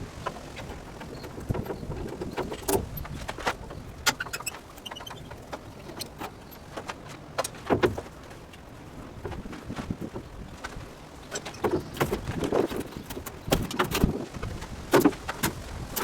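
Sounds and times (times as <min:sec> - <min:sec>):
clicks knocks and clatter: 0:11.3 - 0:16.0.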